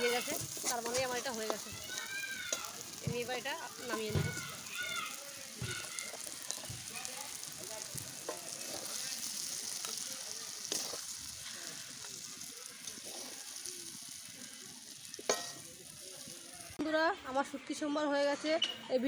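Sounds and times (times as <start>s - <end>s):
oil sizzling in pan: 0.0s - 16.9s
spoon clinking against pan: 15.2s - 15.7s.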